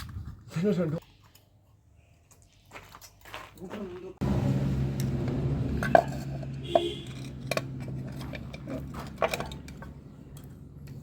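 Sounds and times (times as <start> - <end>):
metal tools clinking: 5.8 - 10.5.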